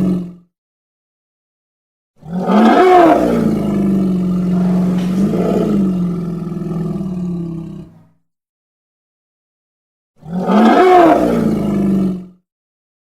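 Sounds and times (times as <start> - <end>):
low creature roar: 2.2 - 8.0, 10.2 - 12.2.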